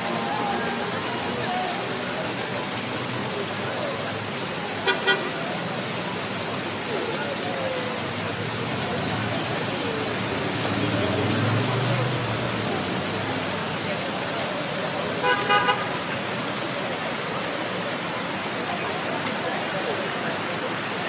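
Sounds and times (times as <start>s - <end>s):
distant voices: 0.0s - 21.0s
traffic: 0.0s - 21.0s
car horn toots: 4.8s - 5.4s, 15.2s - 15.9s
vehicle engine passing: 8.6s - 13.9s.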